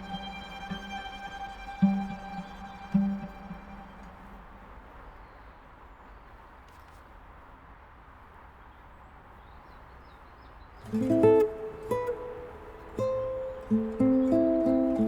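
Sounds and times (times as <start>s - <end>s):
low steady background hum: 0.0s - 15.0s.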